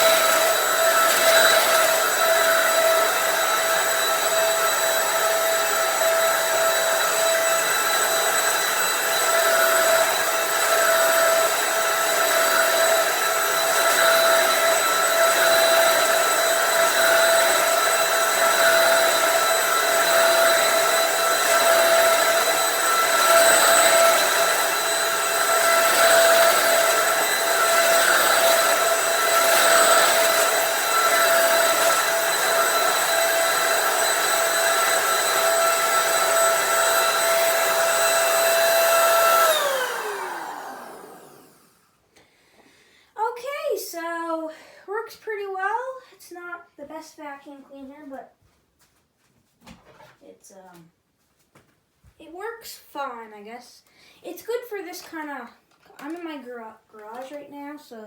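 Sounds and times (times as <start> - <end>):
vacuum cleaner running: 0.0 - 41.9.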